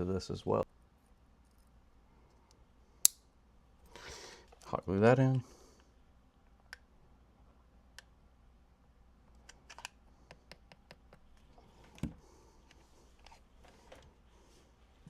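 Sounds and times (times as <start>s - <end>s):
faint steady hum: 0.0s - 15.0s
hands clicking and tapping small parts: 9.4s - 12.8s.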